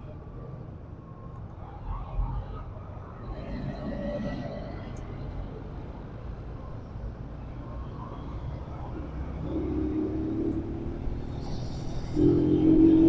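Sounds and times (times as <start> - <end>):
vehicle engine approaching: 8.8 - 13.0.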